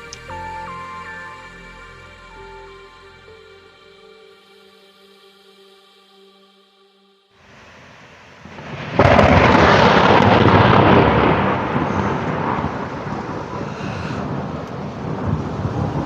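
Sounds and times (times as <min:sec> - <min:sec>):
rain falling: 0:07.5 - 0:16.0
thunder clap and rumble: 0:08.4 - 0:16.0.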